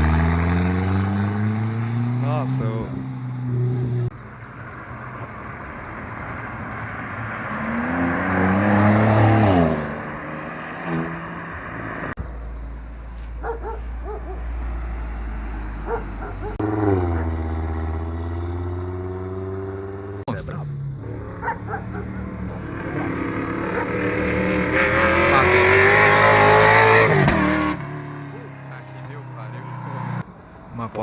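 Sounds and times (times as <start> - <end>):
car engine running: 0.0 - 7.0, 11.5 - 31.0
car driving past: 0.0 - 31.0
dog barking: 13.4 - 14.5, 15.8 - 17.4, 21.2 - 24.2.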